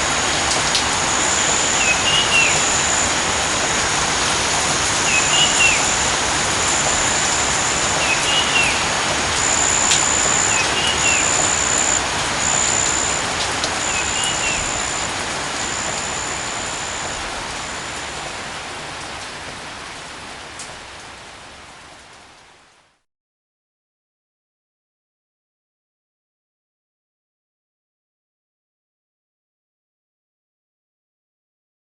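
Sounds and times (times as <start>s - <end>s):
high thin whine: 0.0s - 18.3s
steady rain falling: 0.0s - 23.0s.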